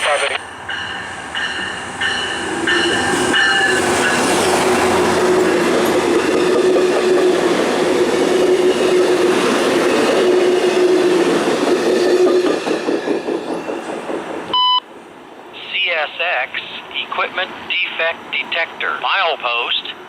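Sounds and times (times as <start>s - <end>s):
train wheels rumbling on rails: 0.1s - 15.5s.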